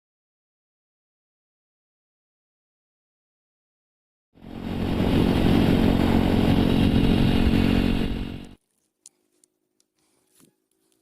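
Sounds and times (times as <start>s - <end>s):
motorcycle engine running hard: 4.4s - 8.6s.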